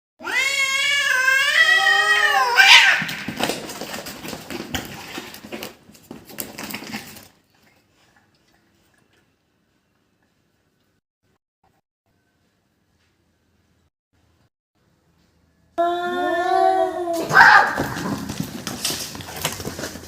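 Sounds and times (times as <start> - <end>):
cat yowling: 0.2 - 3.1, 15.8 - 17.8
cats fighting and scuffling: 0.2 - 9.2, 17.2 - 20.0.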